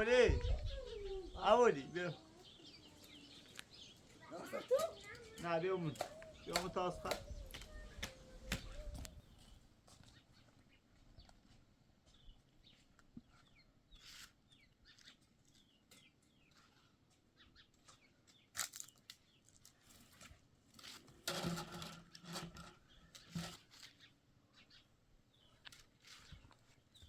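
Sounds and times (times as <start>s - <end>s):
small birds chirping: 0.0s - 20.2s, 22.6s - 27.0s.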